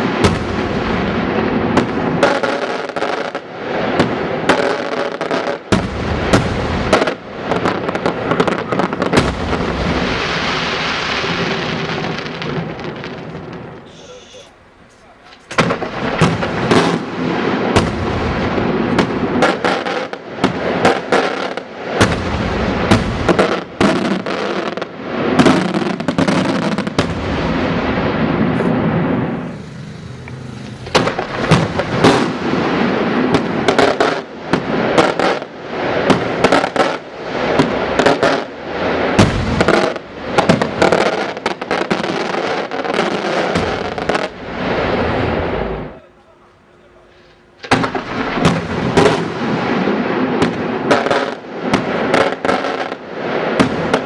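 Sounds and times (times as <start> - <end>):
fireworks bangs and crackling: 0.0 - 46.0, 47.0 - 54.0
fireworks hiss: 13.8 - 18.1, 28.4 - 45.8.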